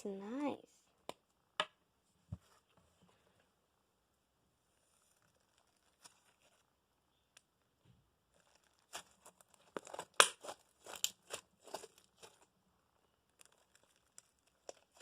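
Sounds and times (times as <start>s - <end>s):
slime crackling and popping: 8.3s - 12.5s, 13.2s - 15.0s.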